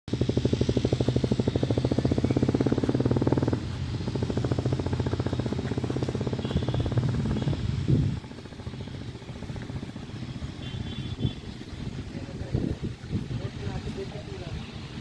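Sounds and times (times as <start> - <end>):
engine running with rapid pulsing: 0.1 - 15.0.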